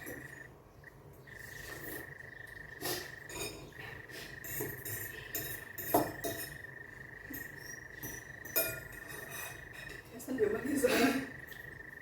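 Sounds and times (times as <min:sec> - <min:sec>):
steady high-pitched whine: 0:00.0 - 0:12.0
cutlery clinking against a bowl: 0:02.8 - 0:06.6, 0:07.3 - 0:10.1.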